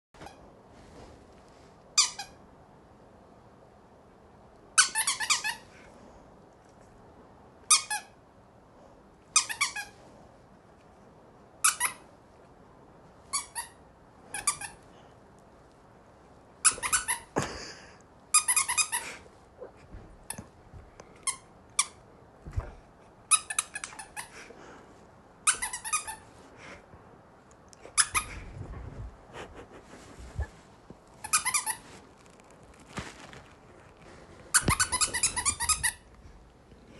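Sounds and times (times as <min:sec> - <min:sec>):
squeaky dog toy squeaking: 0:02.0 - 0:02.4, 0:04.8 - 0:05.7, 0:07.7 - 0:08.2, 0:09.3 - 0:10.0, 0:11.6 - 0:12.0, 0:13.3 - 0:14.8, 0:16.6 - 0:17.3, 0:23.3 - 0:24.3, 0:25.4 - 0:26.2, 0:27.9 - 0:28.3, 0:31.2 - 0:31.8, 0:34.5 - 0:36.0.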